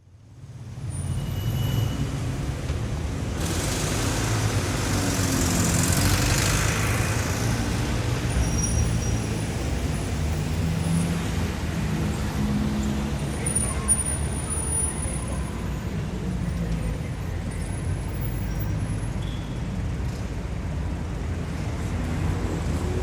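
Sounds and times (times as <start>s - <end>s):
low rumble of vehicle engines: 0.0s - 23.0s
faint high squeals: 1.0s - 2.1s.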